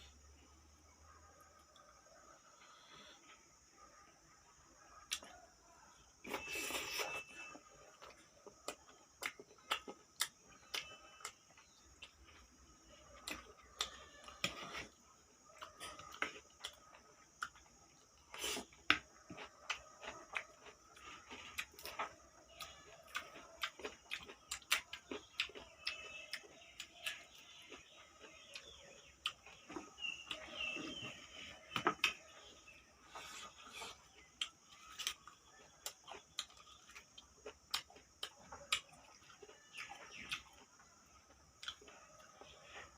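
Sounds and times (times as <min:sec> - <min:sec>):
mouth chewing and smacking: 0:06.2 - 0:42.9.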